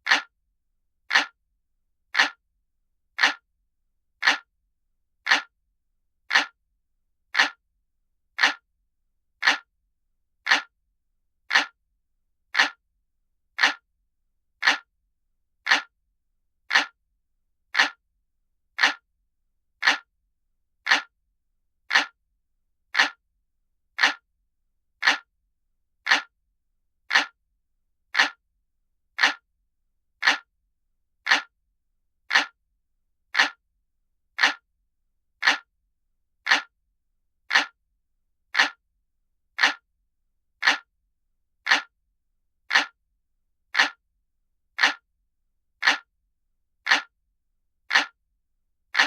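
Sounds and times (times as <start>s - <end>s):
clock ticking: 0.0s - 0.3s, 1.1s - 1.4s, 2.2s - 2.4s, 3.2s - 3.4s, 4.2s - 4.5s, 5.3s - 5.5s, 6.3s - 6.6s, 7.4s - 7.6s, 8.4s - 8.6s, 9.4s - 9.7s, 10.5s - 10.7s, 11.5s - 11.8s, 12.6s - 12.8s, 13.6s - 13.8s, 14.6s - 14.9s, 15.7s - 15.9s, 16.7s - 17.0s, 17.8s - 18.0s, 18.8s - 19.0s, 19.8s - 20.1s, 20.9s - 21.1s, 21.9s - 22.2s, 23.0s - 23.2s, 24.0s - 24.2s, 25.0s - 25.3s, 26.1s - 26.3s, 27.1s - 27.4s, 28.2s - 28.4s, 29.2s - 29.4s, 30.2s - 30.5s, 31.3s - 31.5s, 32.3s - 32.6s, 33.3s - 33.6s, 34.4s - 34.6s, 35.4s - 35.7s, 36.4s - 36.7s, 37.5s - 37.8s, 38.5s - 38.8s, 39.6s - 39.8s, 40.6s - 40.9s, 41.6s - 41.9s, 42.7s - 43.0s, 43.7s - 44.0s, 44.8s - 45.0s, 45.8s - 46.1s, 46.8s - 47.1s, 47.9s - 48.2s.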